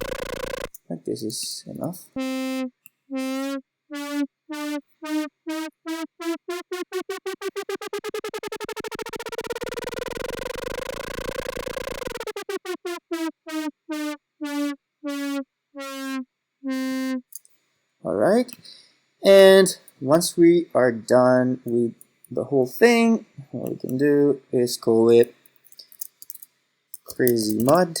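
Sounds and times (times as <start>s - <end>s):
pulsing synthesizer note: 0.0s - 0.7s, 1.9s - 17.3s.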